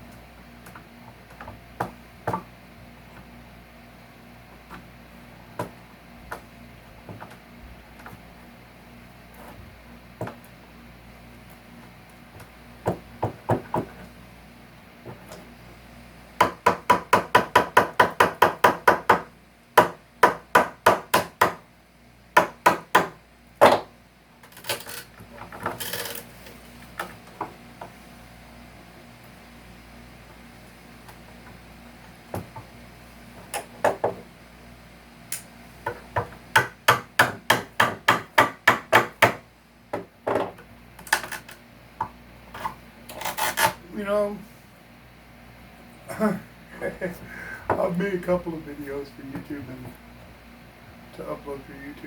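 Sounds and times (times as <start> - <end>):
hammer striking nails in wood: 16.4 - 21.6, 22.4 - 23.9, 35.9 - 39.4.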